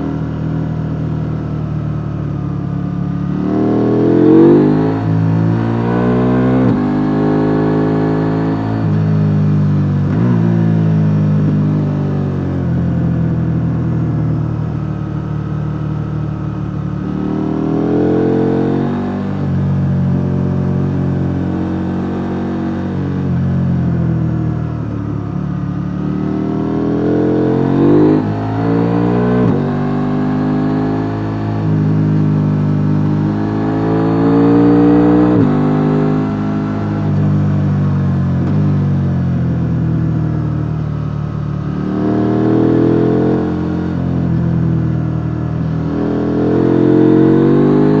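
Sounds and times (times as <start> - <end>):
motorcycle engine revving: 2.3 - 48.0.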